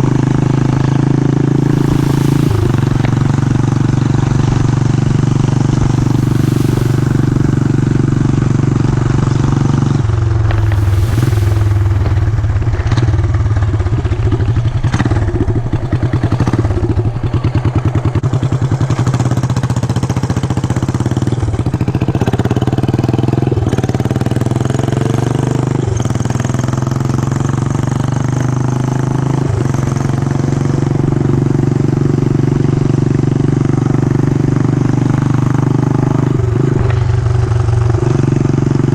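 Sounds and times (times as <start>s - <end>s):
motorcycle engine accelerating: 1.4s - 14.8s.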